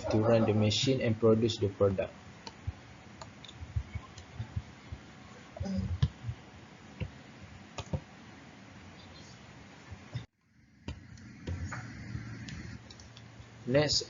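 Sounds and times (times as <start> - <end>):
room tone hiss: 0.0 - 14.0
faint clicks and taps: 7.8 - 8.1.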